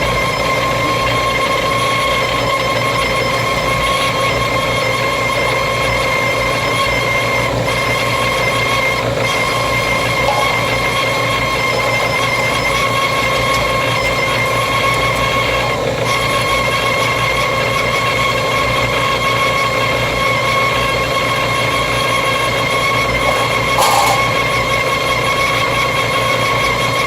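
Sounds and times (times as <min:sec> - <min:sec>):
machine whine: 0:00.0 - 0:27.0
machine humming: 0:06.7 - 0:19.0, 0:22.5 - 0:25.6.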